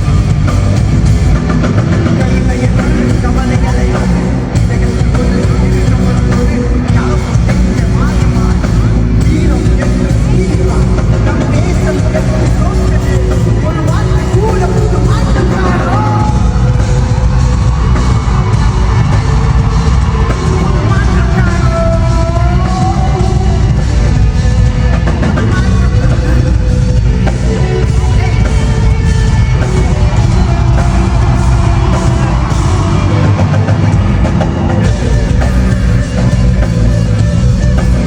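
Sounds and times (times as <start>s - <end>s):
live rock band music: 0.0s - 38.0s
voice singing over band: 1.6s - 19.1s, 19.8s - 24.4s.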